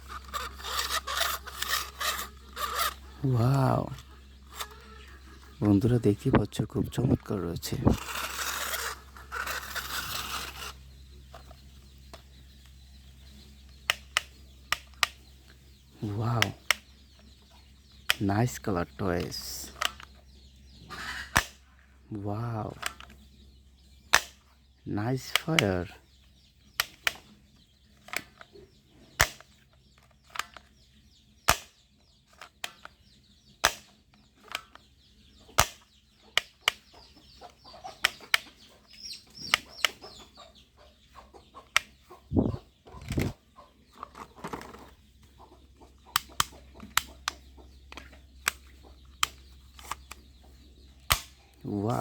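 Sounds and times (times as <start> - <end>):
toy gun clicks and pops: 0.1 - 3.0, 7.7 - 12.8, 18.1 - 20.2, 21.3 - 21.6, 24.1 - 24.5, 29.2 - 30.8, 31.5 - 33.0, 33.6 - 34.9, 35.6 - 37.4, 46.1 - 50.3, 51.1 - 51.4.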